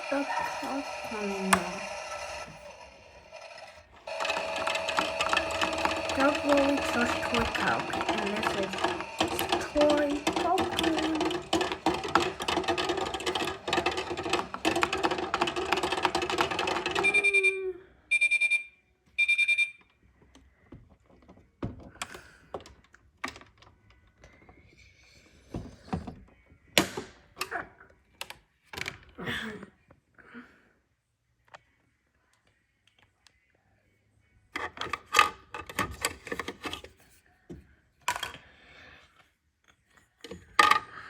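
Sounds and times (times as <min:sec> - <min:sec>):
toy microwave humming: 0:00.0 - 0:19.8
plastic toy parts clicking: 0:03.4 - 0:17.2.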